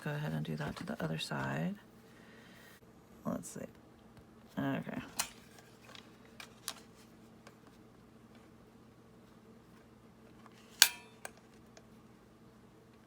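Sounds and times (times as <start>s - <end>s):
paper and card handling clicks: 5.1s - 7.7s.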